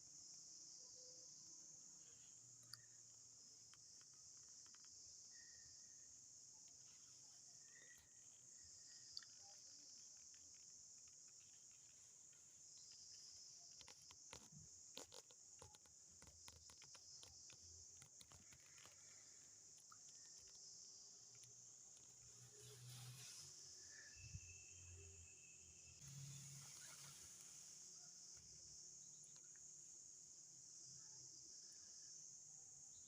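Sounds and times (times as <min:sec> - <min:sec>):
insects chirring: 0:00.0 - 0:33.0
small clicks and rustles: 0:02.0 - 0:05.2, 0:06.6 - 0:24.1.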